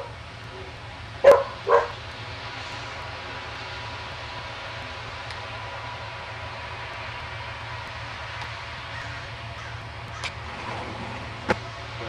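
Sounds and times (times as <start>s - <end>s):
distant engine drone: 0.0s - 12.0s
dog barking: 1.2s - 2.0s.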